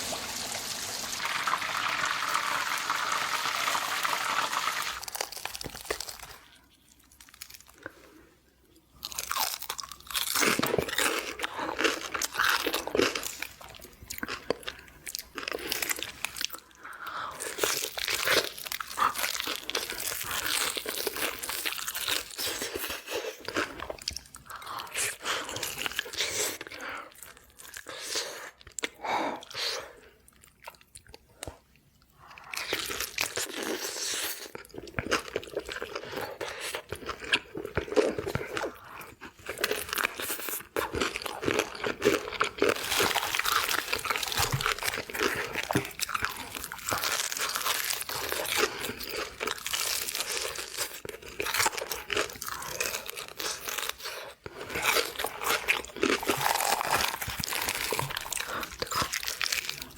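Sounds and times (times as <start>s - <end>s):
crunchy chewing: 9.0s - 16.6s, 32.5s - 59.9s.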